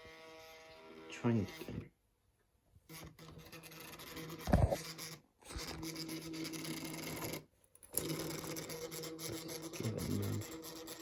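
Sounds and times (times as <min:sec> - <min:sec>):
small electric motor buzzing: 0:00.0 - 0:01.8, 0:08.0 - 0:11.0.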